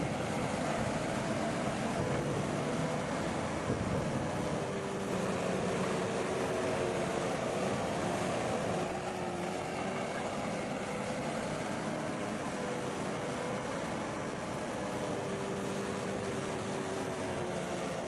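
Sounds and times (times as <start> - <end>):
heavy diesel machinery running: 0.0 - 18.0.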